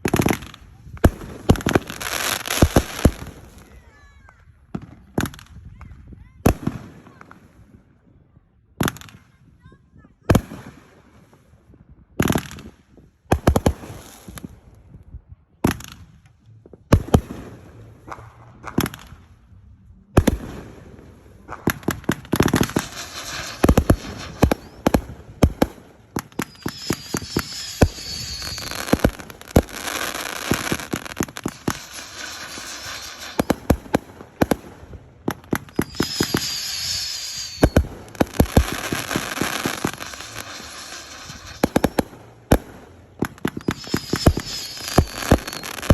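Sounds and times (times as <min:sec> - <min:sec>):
fireworks bangs and crackling: 0:00.0 - 0:08.2, 0:08.8 - 0:45.9
firework whistling hiss: 0:01.4 - 0:04.0, 0:21.7 - 0:45.9.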